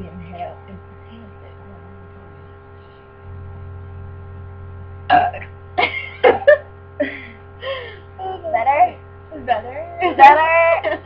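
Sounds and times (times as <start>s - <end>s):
steady electrical hum: 0.0s - 11.0s
woman burping: 5.1s - 6.5s.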